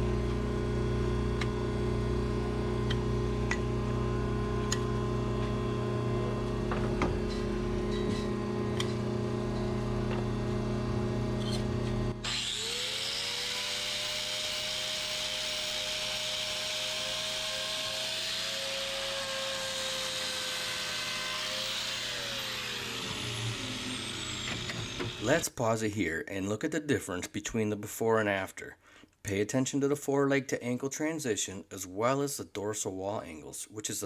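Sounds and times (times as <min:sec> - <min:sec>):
low motor hum: 0:00.0 - 0:12.8
grinder grinding hiss: 0:12.2 - 0:25.5.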